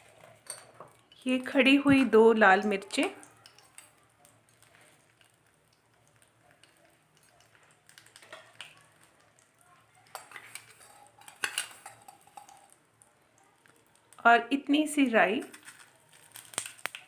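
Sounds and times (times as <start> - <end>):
metal utensils clinking on dishes: 0.0 - 1.6, 10.0 - 12.8.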